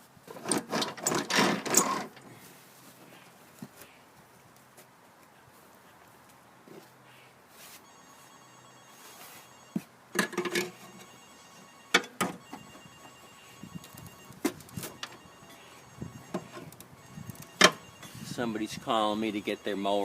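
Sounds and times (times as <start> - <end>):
phone ringing: 7.8 - 20.0.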